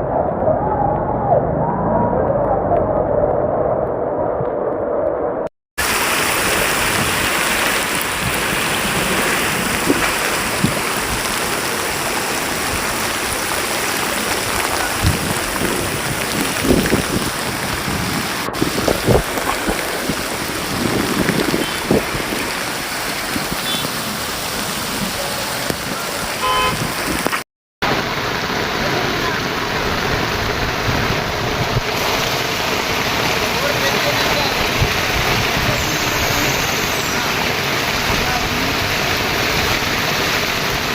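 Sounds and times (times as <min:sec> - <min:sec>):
heavy rain pouring: 0:00.0 - 0:40.9
water rushing: 0:01.7 - 0:40.9
vehicle horn toot: 0:23.6 - 0:23.9, 0:26.4 - 0:26.9.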